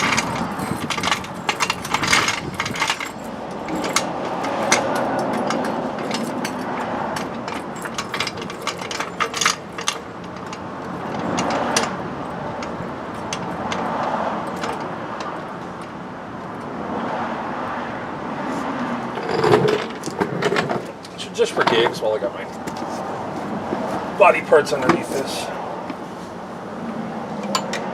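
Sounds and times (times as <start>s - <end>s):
hand tools clinking on metal: 0.0s - 15.4s, 19.2s - 22.9s, 24.2s - 26.0s.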